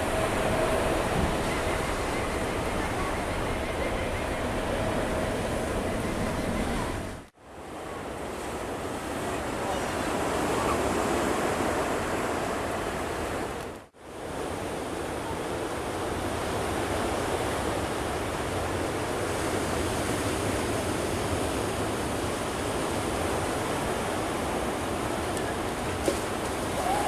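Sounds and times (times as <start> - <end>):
jet engines roaring: 0.0 - 7.3
rushing air: 0.0 - 7.3.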